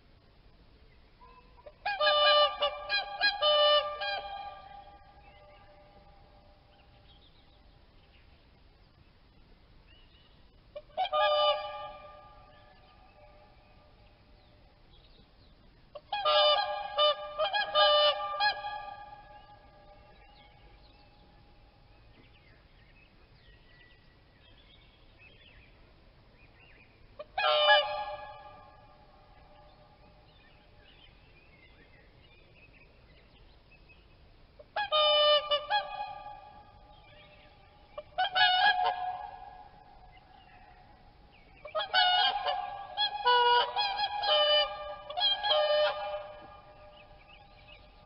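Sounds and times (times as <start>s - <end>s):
swan honking: 1.2s - 7.0s, 10.7s - 14.0s, 15.9s - 21.3s, 26.6s - 31.0s, 34.5s - 48.0s.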